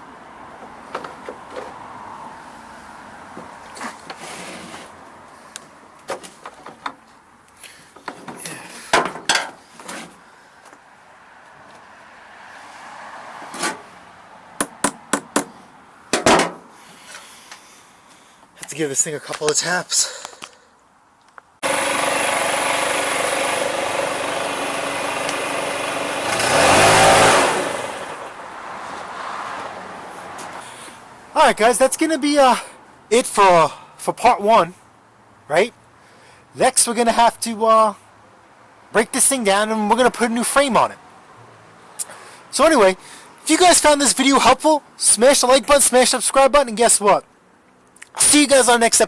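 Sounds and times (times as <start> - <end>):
short scrape: 3.8 - 5.0
handling knocks and clicks: 6.0 - 7.2, 8.0 - 10.1
leaf blower engine revving: 21.6 - 28.3.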